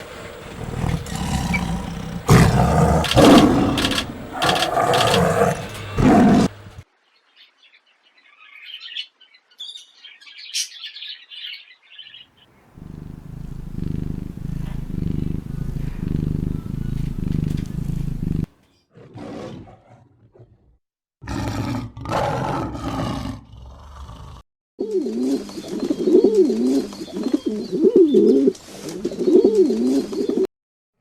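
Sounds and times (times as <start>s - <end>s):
large animal low calls: 0.0s - 6.5s, 12.8s - 18.5s
faint high chirping: 12.8s - 18.4s
low rumbling: 12.8s - 18.5s.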